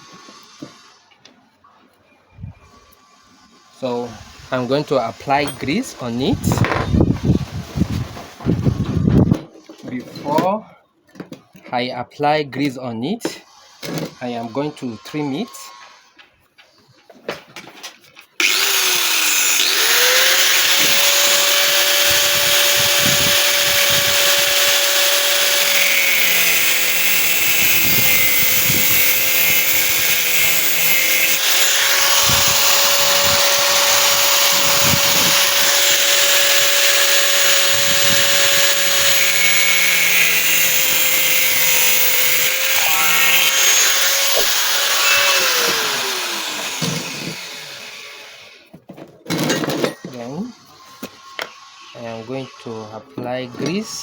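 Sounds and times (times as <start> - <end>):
power tool cutting metal: 18.4 - 48.7.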